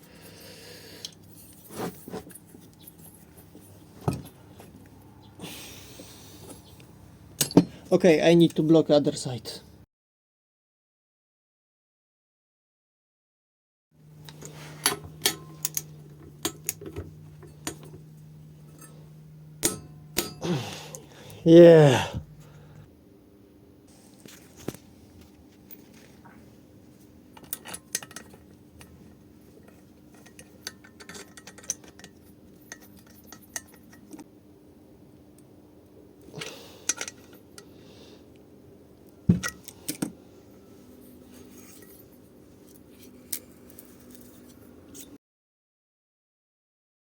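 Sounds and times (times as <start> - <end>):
metal tools clinking: 1.1 - 4.3, 7.4 - 7.8, 14.2 - 20.6, 27.4 - 34.2, 41.0 - 45.1
faint steady hum: 14.0 - 45.0.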